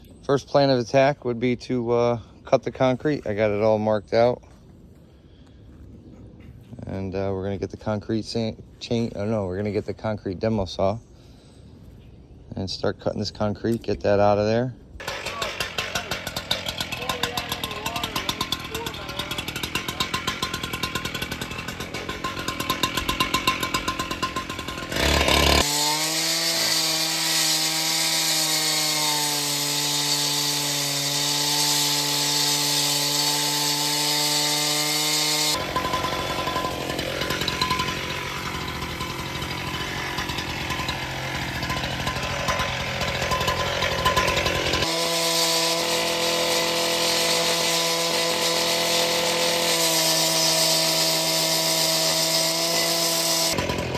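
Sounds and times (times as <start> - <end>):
concrete saw cutting concrete: 15.0 - 53.9.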